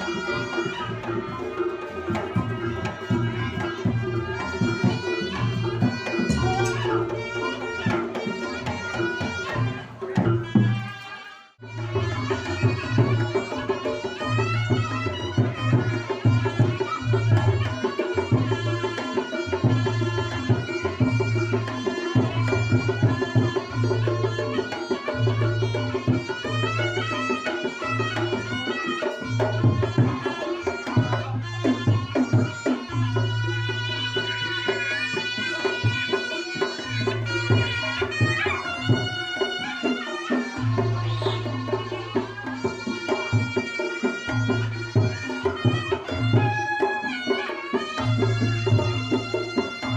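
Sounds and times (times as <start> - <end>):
busy hand drumming: 0.0 - 11.0
nasal reed shawm melody: 0.0 - 49.9.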